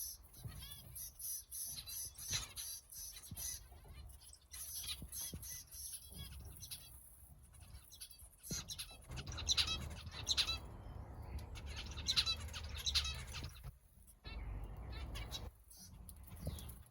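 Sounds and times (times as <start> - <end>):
finches chirping buzzy calls: 0.0 - 16.9
low steady rumble: 9.2 - 15.5.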